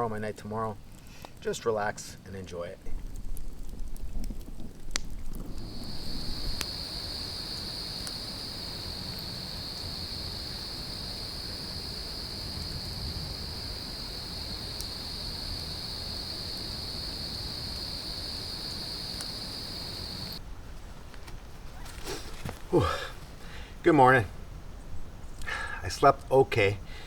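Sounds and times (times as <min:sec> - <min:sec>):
low rumble of wind: 0:01.6 - 0:27.0
crickets trilling: 0:05.5 - 0:20.4
faint clicks: 0:06.5 - 0:06.7, 0:14.8 - 0:15.0.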